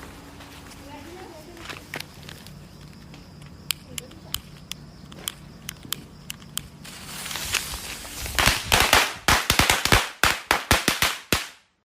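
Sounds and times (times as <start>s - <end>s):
firecracker fuse hiss: 6.8s - 11.6s
firecrackers banging: 6.9s - 11.6s.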